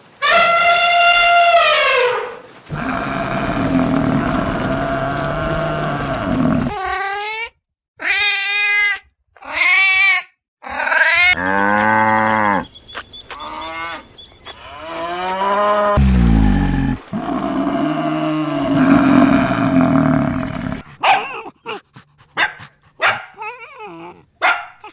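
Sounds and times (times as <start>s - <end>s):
deep low animal calls: 0.3s - 6.8s, 13.3s - 20.9s
dog barking: 21.0s - 21.6s, 22.4s - 23.4s, 24.4s - 24.9s.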